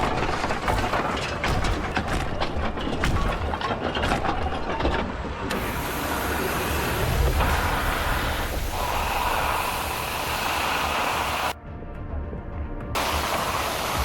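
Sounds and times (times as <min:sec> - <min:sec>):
mechanical clicks and clatter: 0:00.0 - 0:06.0
steady hiss: 0:05.6 - 0:11.6, 0:13.0 - 0:14.0.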